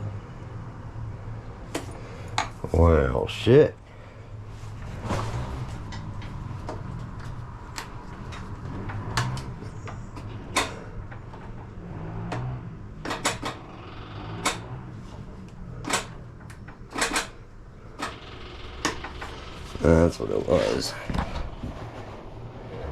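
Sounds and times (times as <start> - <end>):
lever clicks and knocks: 12.3 - 14.8, 15.8 - 17.4.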